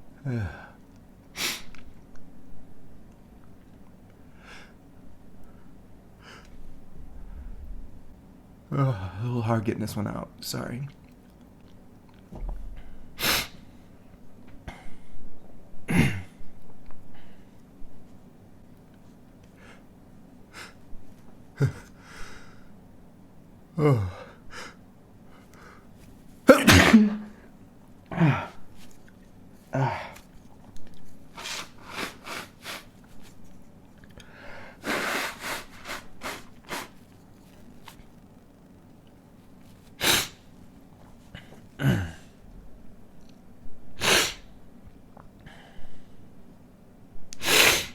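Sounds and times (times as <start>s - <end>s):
man sniffing: 1.4s - 1.8s, 31.4s - 32.9s, 34.8s - 37.0s, 40.0s - 40.4s, 44.0s - 44.5s, 47.4s - 47.9s
breathy nasal burst: 13.2s - 13.6s, 31.4s - 32.9s, 34.6s - 37.0s, 40.0s - 40.4s, 44.0s - 44.5s, 47.4s - 47.9s
man sneezing: 26.5s - 27.4s, 44.0s - 44.4s, 47.4s - 47.9s.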